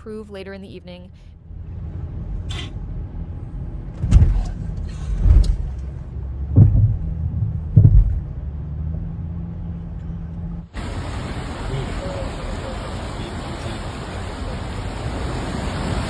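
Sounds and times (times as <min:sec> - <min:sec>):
vehicle engine humming: 0:00.0 - 0:16.0
heavy low thumps: 0:03.9 - 0:08.6.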